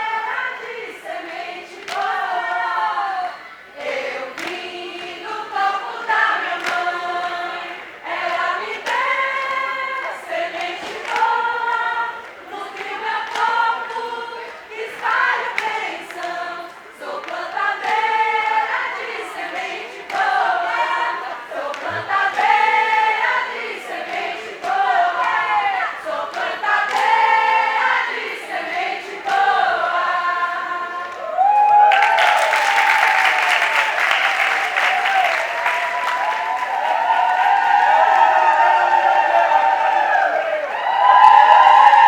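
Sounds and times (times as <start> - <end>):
women singing together: 0.0 - 31.8.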